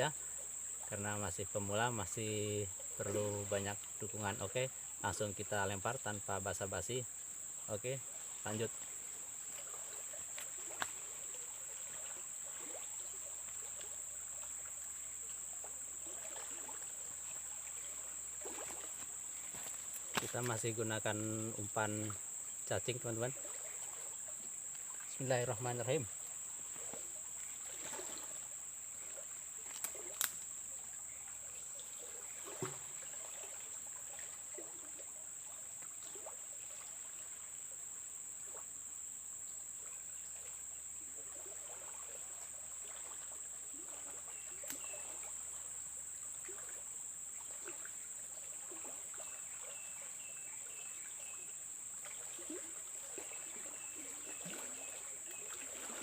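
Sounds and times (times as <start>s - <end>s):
high-pitched insect drone: 0.0s - 34.8s
flowing river water: 0.0s - 56.0s.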